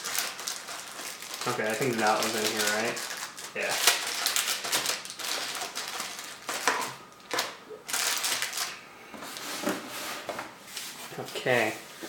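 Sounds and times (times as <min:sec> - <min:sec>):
cardboard and packaging rustling: 0:00.0 - 0:12.0.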